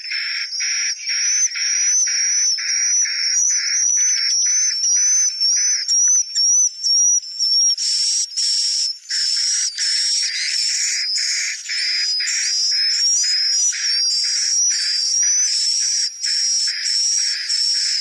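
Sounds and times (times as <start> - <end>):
buzzy bird chirps: 7.8 - 18.0.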